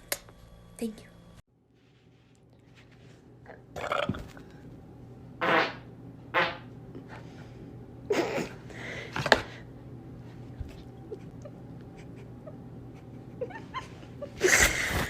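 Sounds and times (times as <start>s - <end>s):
person burping: 3.4s - 4.4s.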